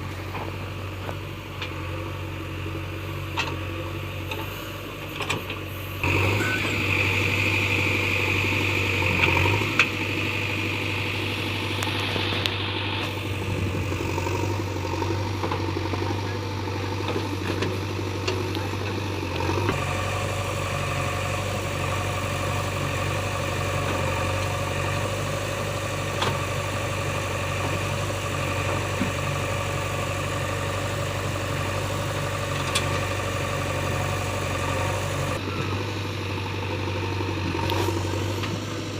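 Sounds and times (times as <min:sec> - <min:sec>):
heavy diesel engine running: 0:00.0 - 0:38.9
high whine: 0:06.0 - 0:09.0, 0:09.6 - 0:16.4.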